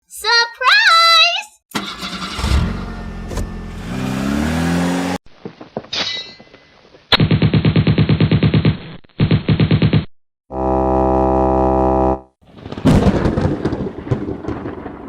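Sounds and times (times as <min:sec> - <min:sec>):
engine starting and revving: 0:01.7 - 0:05.2.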